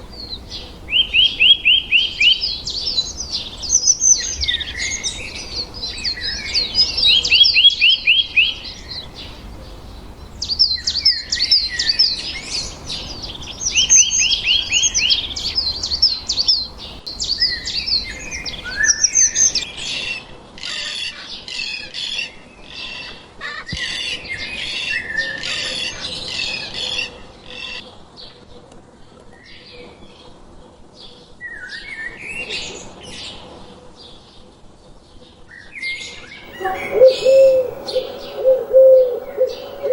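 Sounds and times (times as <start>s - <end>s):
small birds chirping: 0.0s - 19.6s, 36.5s - 39.9s.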